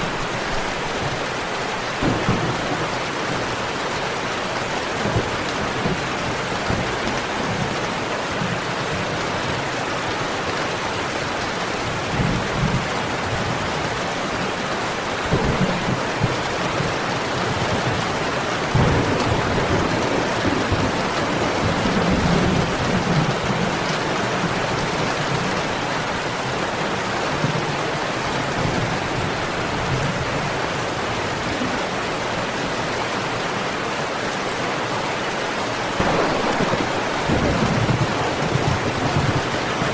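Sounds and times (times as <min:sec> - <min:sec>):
low thunder rumbling: 0:00.0 - 0:07.8, 0:15.3 - 0:26.3, 0:35.9 - 0:39.9
heavy rain falling: 0:00.0 - 0:39.9.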